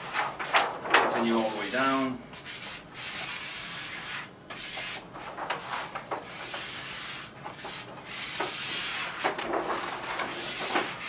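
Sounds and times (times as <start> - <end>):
paper backing being peeled: 5.3 - 11.0.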